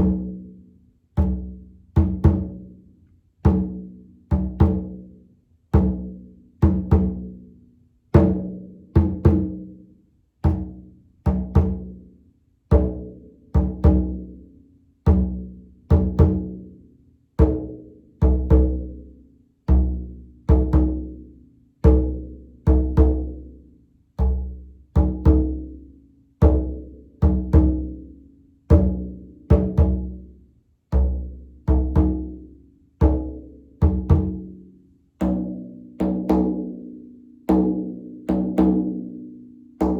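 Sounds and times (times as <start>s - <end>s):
frame drum beats: 1.2s - 2.7s, 3.4s - 5.0s, 5.8s - 7.3s, 8.2s - 9.7s, 10.4s - 12.0s, 12.7s - 14.3s, 15.1s - 16.6s, 17.4s - 19.1s, 19.7s - 21.2s, 28.7s - 30.3s, 30.9s - 34.6s, 35.2s - 39.2s.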